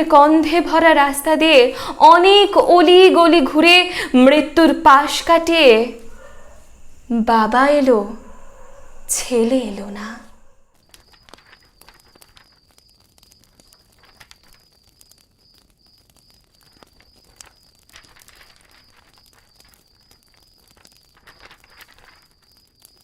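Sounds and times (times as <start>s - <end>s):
steady high whine: 0.0s - 10.7s
faint rustles: 0.4s - 12.6s
small clicks: 10.8s - 23.0s.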